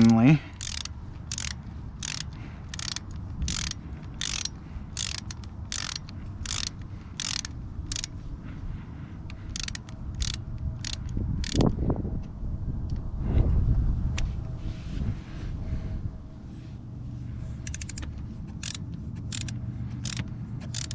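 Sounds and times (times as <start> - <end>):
ratchet wrench clicking: 0.0 - 8.2, 9.3 - 11.7, 17.6 - 20.9
steady low rumble: 0.0 - 20.9.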